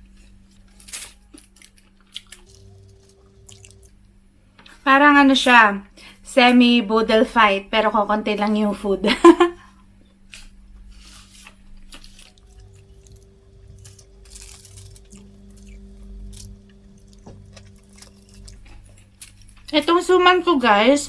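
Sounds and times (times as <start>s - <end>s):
quiet chewing and mouth sounds: 0.2s - 3.9s, 10.3s - 19.8s
steady low hum: 2.3s - 6.1s, 11.8s - 21.0s.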